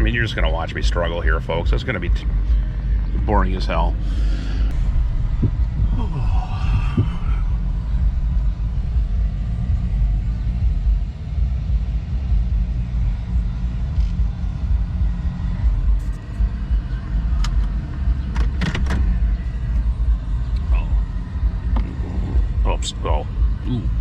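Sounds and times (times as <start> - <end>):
vehicle rumble from inside: 0.0 - 24.0.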